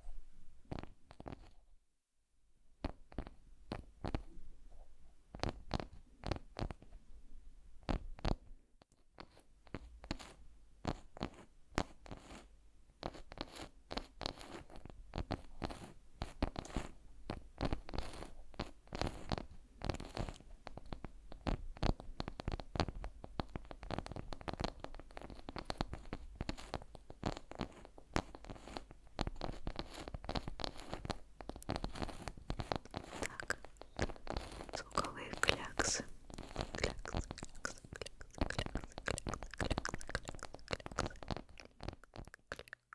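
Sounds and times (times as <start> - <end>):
crisp crackles and clicks: 29.3 - 42.9.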